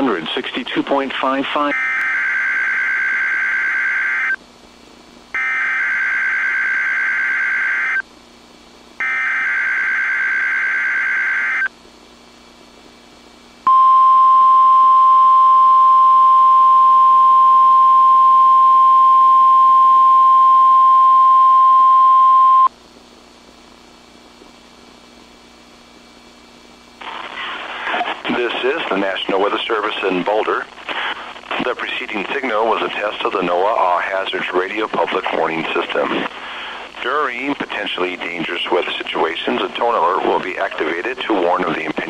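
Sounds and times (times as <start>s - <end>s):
steady loud alarm tone: 1.7s - 4.4s, 5.4s - 8.0s, 9.0s - 11.7s.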